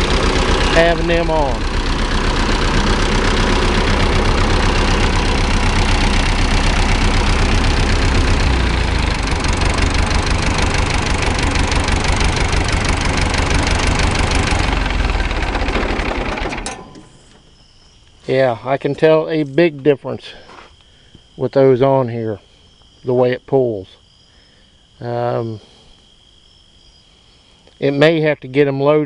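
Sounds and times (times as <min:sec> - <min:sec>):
diesel tractor engine idling: 0:00.0 - 0:20.6.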